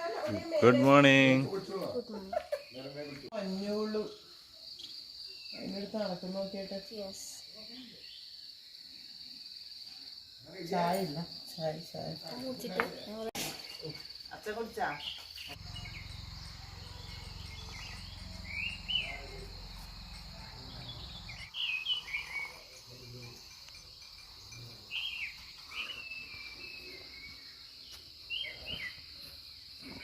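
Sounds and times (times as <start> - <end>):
crickets chirping: 0.0 - 30.0
bird calls: 14.9 - 29.1.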